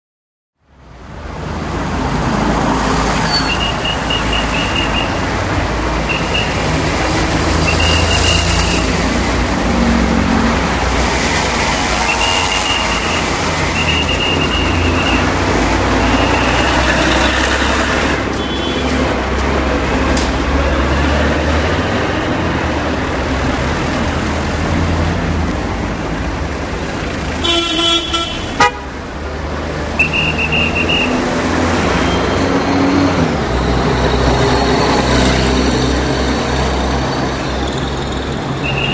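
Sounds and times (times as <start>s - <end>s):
traffic engines rumbling: 0.6s - 38.9s
car horn honking: 3.2s - 5.2s, 6.0s - 6.7s, 11.8s - 17.4s, 18.3s - 19.0s, 27.4s - 29.0s, 30.0s - 31.3s, 38.6s - 38.9s
pea whistle trilling blasts: 3.2s - 5.2s, 12.0s - 15.3s, 30.0s - 31.2s.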